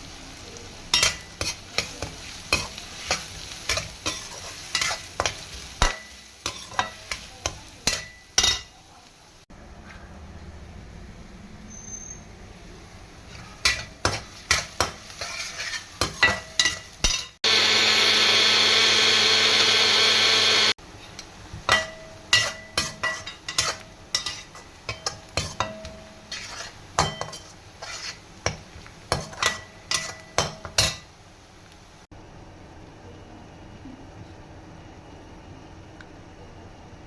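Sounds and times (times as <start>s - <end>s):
electric motor running: 17.4s - 20.8s
spoon clinking against metal bowl: 21.7s - 26.0s.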